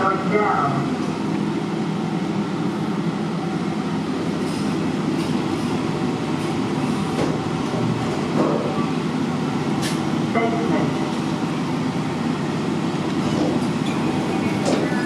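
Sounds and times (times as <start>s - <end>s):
lift car rumbling in motion: 4.4s - 15.0s.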